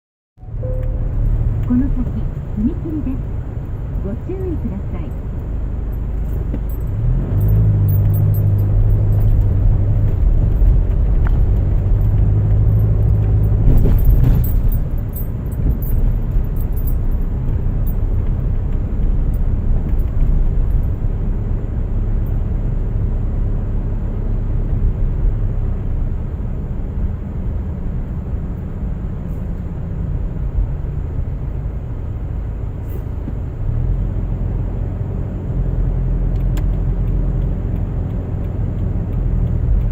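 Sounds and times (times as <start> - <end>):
car engine and tyre rumble: 0.4 - 39.9.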